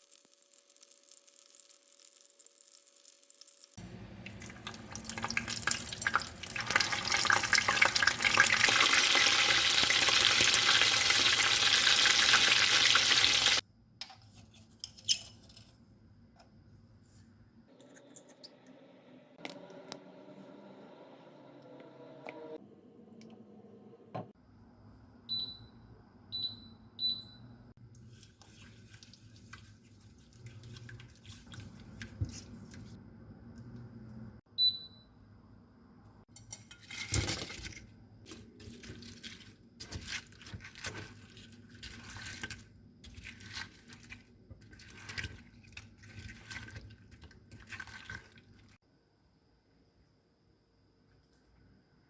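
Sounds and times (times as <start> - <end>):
short appliance beeps: 25.3 - 27.6, 34.5 - 35.2.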